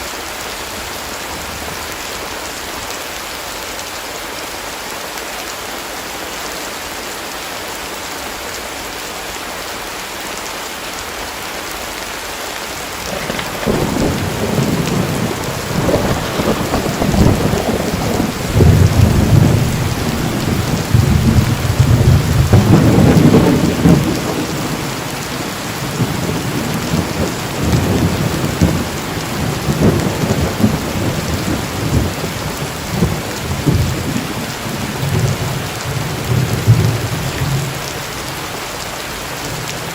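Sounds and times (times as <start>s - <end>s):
heavy rain: 0.0s - 39.9s
rolling thunder: 13.0s - 37.7s.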